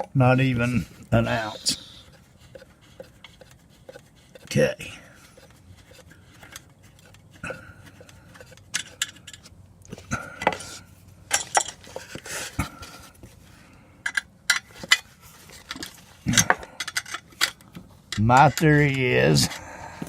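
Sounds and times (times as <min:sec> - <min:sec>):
metallic clinks and knocks of tools: 0:11.3 - 0:11.8, 0:15.7 - 0:19.0.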